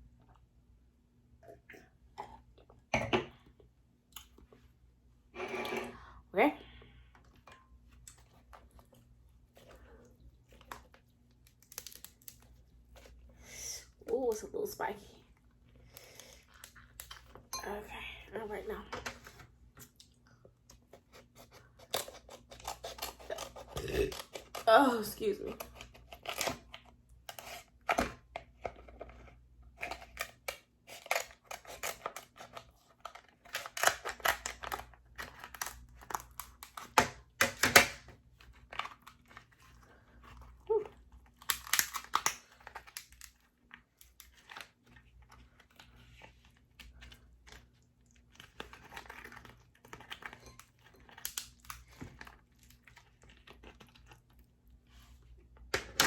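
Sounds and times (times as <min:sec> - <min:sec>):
crab shells cracking: 0:10.6 - 0:12.5, 0:29.8 - 0:39.5, 0:41.1 - 0:44.8, 0:47.3 - 0:54.3.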